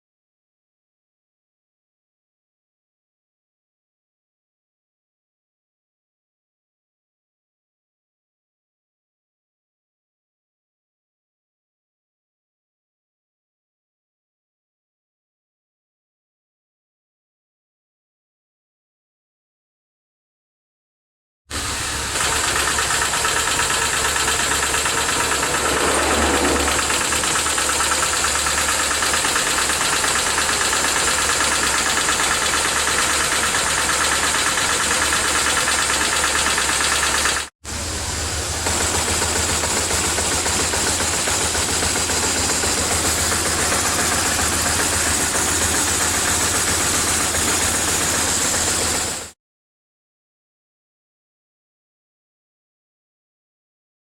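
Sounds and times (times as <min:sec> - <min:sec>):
motorcycle engine running: 0:21.5 - 0:49.3.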